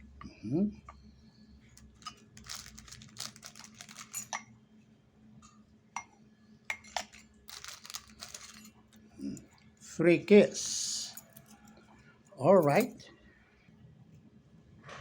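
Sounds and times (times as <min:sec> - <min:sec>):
metal keys clinking: 0:01.8 - 0:04.4, 0:06.8 - 0:09.4, 0:11.1 - 0:11.7, 0:12.6 - 0:13.0
rustling: 0:02.0 - 0:04.3, 0:07.5 - 0:08.7.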